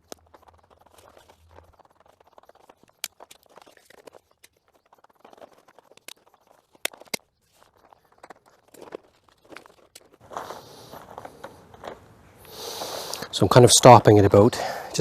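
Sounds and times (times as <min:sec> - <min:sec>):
sharp clacks: 0:00.0 - 0:07.2
footsteps: 0:00.0 - 0:14.4.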